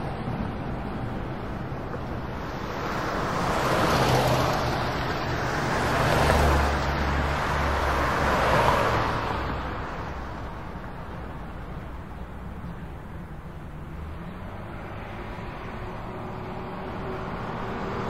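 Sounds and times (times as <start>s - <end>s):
cars passing by: 0.0s - 18.0s.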